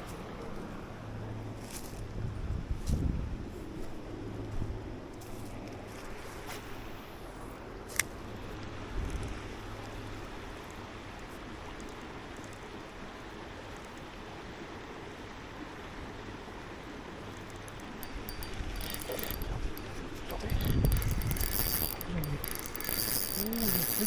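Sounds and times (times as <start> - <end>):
creek water running: 5.2 - 24.0.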